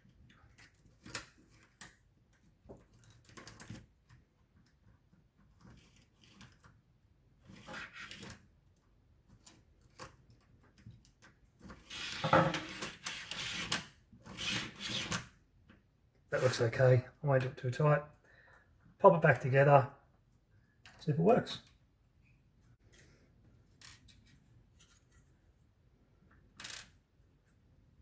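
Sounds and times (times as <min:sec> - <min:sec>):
tape measure clicking and clattering: 0:26.6 - 0:27.0.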